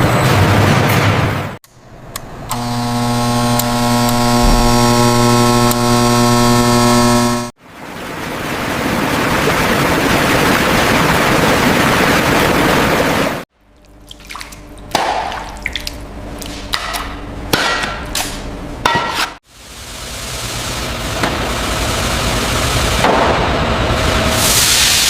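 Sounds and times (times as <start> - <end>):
dripping: 13.7 - 16.5.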